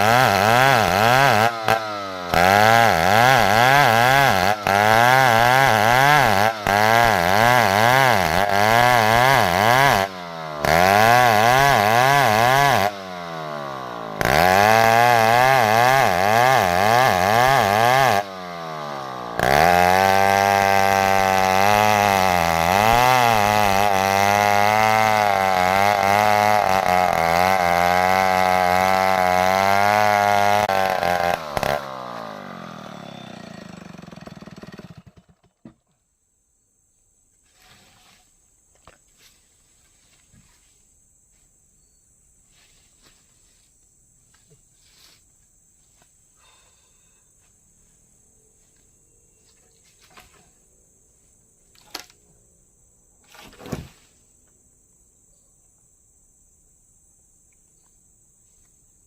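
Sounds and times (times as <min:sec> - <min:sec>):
chainsaw engine running: 0:00.0 - 0:35.8.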